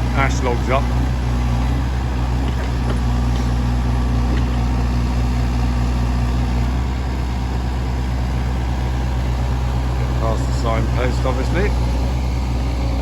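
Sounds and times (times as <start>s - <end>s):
diesel engine running: 0.0s - 13.0s
faint knocks: 1.2s - 5.4s.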